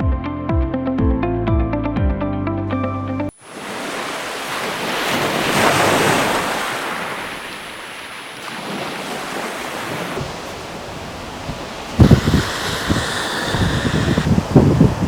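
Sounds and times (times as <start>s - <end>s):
sea noise: 3.3s - 15.0s
rushing wind: 8.6s - 15.0s
wind buffeting microphone: 9.9s - 15.0s.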